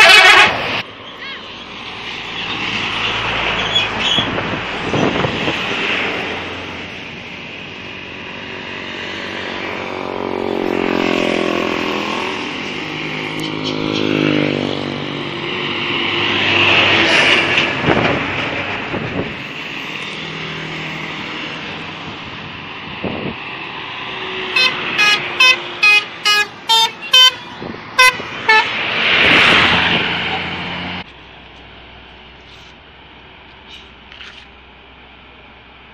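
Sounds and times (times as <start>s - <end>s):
bus musical horn toots: 0.0s - 1.4s, 24.5s - 28.8s
road traffic passing: 0.0s - 35.9s.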